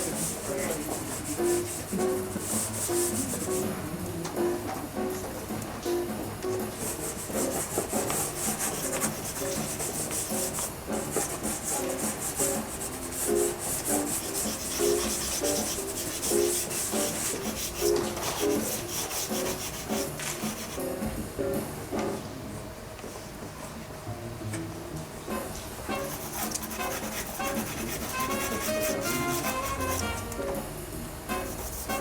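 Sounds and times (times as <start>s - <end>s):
pastel scratching on paper: 0.0s - 3.8s, 6.6s - 21.0s, 25.9s - 30.2s, 31.3s - 32.0s
soft music: 0.0s - 32.0s.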